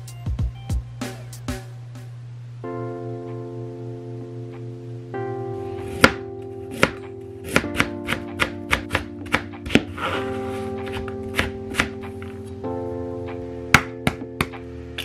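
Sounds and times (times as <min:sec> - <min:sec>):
guitar music: 0:02.6 - 0:15.0
knife chopping on cutting board: 0:05.9 - 0:09.9, 0:10.9 - 0:12.0.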